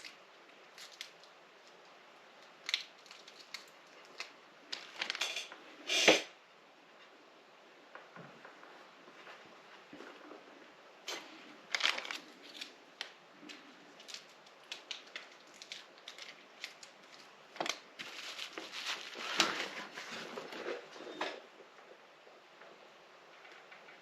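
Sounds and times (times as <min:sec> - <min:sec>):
small clicks taps and crinkles: 0:00.0 - 0:05.6, 0:11.1 - 0:20.8, 0:21.6 - 0:24.0.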